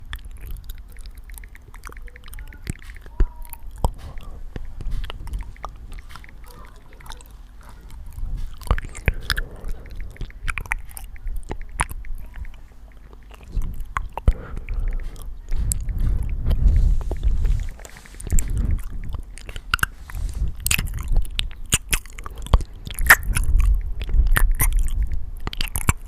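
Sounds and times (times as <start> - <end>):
handling rumble: 2.0 - 12.8, 13.4 - 25.4
toy bubbles popping: 23.0 - 25.1.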